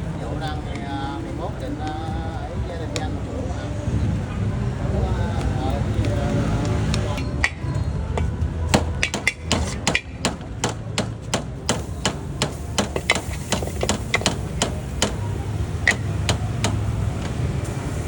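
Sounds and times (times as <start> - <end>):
cooking utensil striking: 7.2 - 17.4.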